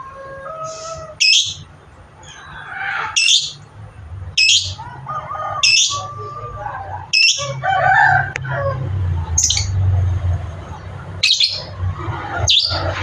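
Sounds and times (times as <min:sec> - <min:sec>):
soft low bird calls: 0:00.0 - 0:03.6
lovebird shrill chirps: 0:01.2 - 0:01.6, 0:03.2 - 0:03.6, 0:04.4 - 0:04.8, 0:11.2 - 0:11.7.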